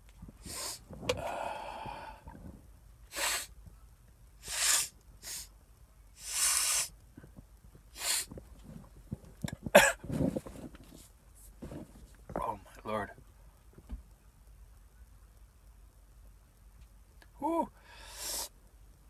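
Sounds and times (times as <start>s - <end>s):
man sniffing hard: 0.4s - 2.2s, 3.1s - 3.5s, 4.4s - 5.5s, 6.2s - 6.9s, 8.0s - 8.3s, 17.9s - 18.6s.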